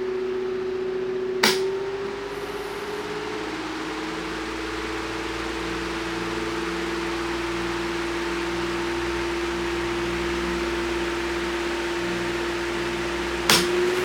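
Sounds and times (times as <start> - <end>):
fan motor humming: 0.0 - 14.0
rush of air from fan: 1.4 - 7.7.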